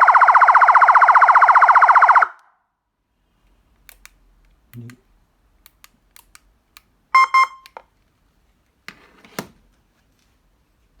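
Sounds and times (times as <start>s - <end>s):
short electronic beeps: 7.2s - 7.6s.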